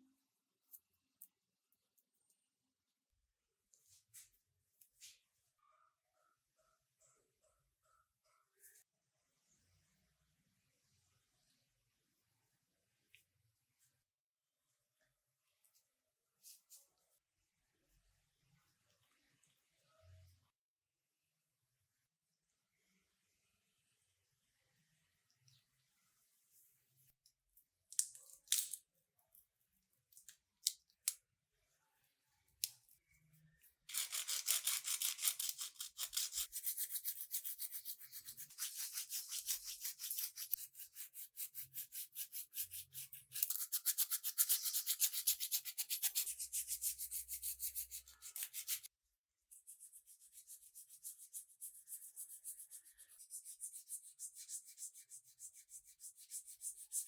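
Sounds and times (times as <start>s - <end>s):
rubbing strokes on a surface: 36.0s - 48.9s, 49.5s - 57.0s.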